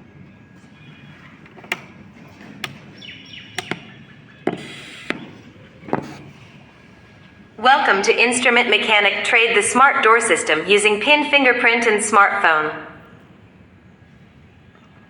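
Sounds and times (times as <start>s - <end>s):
sharp clicks and knocks: 1.4s - 2.9s, 3.6s - 6.3s.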